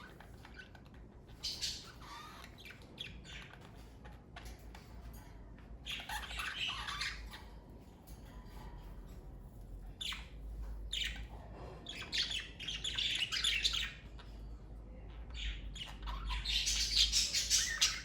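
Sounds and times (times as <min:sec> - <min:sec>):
budgerigars chattering: 0:00.0 - 0:04.5, 0:05.8 - 0:07.6, 0:15.2 - 0:18.0.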